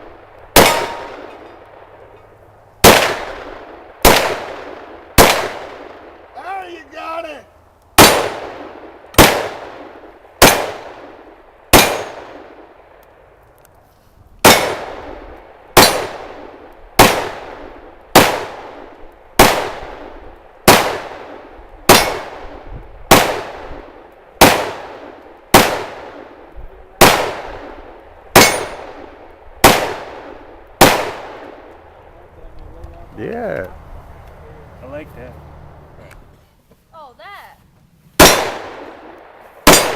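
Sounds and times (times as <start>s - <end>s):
pistol shots with echo: 0.5s - 1.9s, 2.8s - 6.2s, 8.0s - 12.7s, 14.4s - 15.2s, 15.8s - 26.4s, 27.0s - 31.7s, 38.2s - 39.9s.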